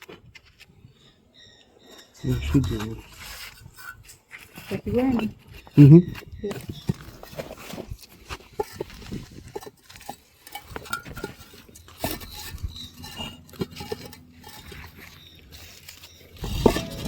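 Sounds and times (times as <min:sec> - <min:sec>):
bricks and tools knocking: 0:16.5 - 0:17.0.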